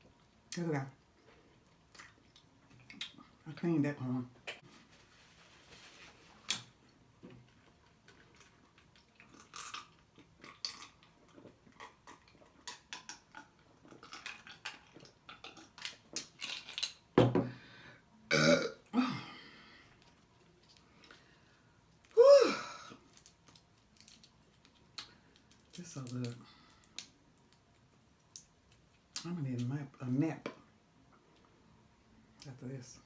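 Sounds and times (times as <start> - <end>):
wet lip-smacking and chewing: 8.1 - 16.3
person burping: 18.3 - 19.4, 22.2 - 23.0.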